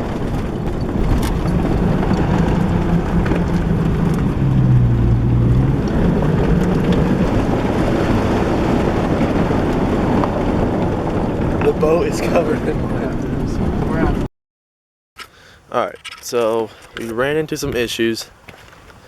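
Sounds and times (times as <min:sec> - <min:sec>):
engine labouring in mud: 0:00.0 - 0:14.3.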